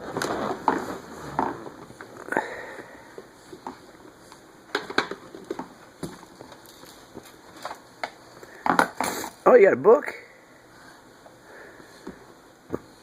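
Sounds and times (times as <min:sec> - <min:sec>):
hard toys knocking and clattering: 0:08.6 - 0:09.2.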